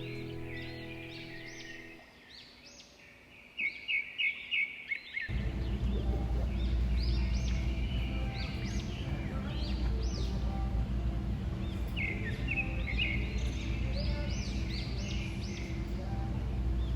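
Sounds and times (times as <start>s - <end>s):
budgerigars chirping: 0.0s - 2.0s
low steady hum: 0.0s - 2.0s, 5.3s - 16.9s.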